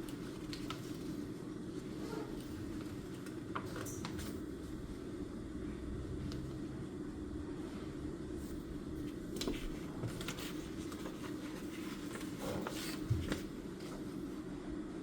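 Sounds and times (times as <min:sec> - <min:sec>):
low room hum: 0:00.0 - 0:15.0
pages rustling: 0:09.0 - 0:14.1.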